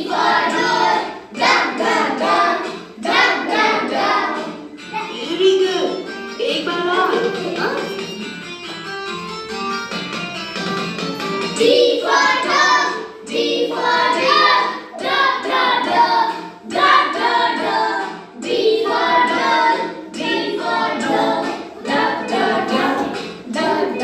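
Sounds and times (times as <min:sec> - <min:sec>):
musical accompaniment: 0:00.0 - 0:24.0
person singing: 0:18.4 - 0:24.0.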